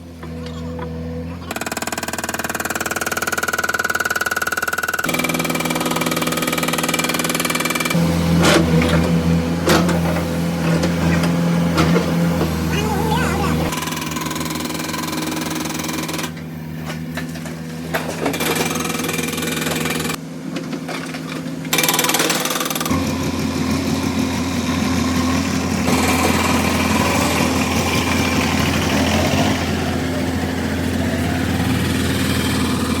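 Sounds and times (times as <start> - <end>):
diesel engine running: 5.1 - 33.0
hydraulic breaker hammering: 25.8 - 30.4.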